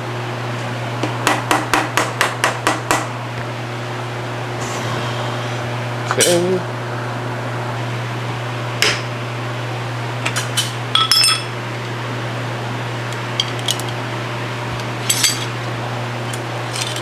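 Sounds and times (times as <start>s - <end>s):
low machine hum: 2.0s - 17.0s
metal tools clinking: 11.0s - 11.5s, 13.1s - 14.0s, 14.8s - 17.0s.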